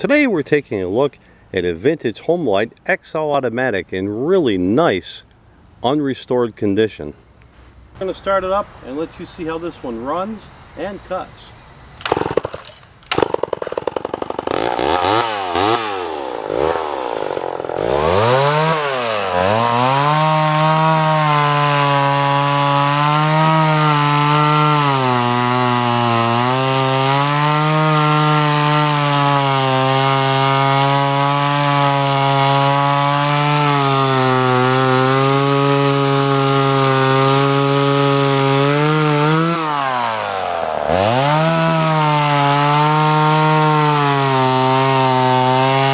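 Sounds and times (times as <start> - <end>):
chainsaw revving: 12.0 - 45.9.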